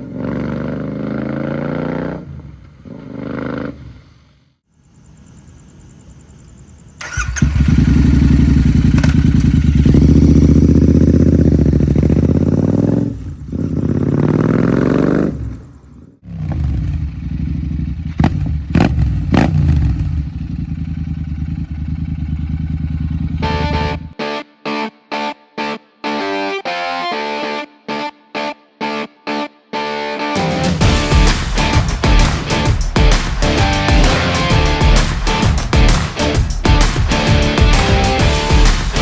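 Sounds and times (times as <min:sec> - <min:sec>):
motorcycle engine revving: 0:00.0 - 0:04.4, 0:07.0 - 0:24.2, 0:30.8 - 0:39.0.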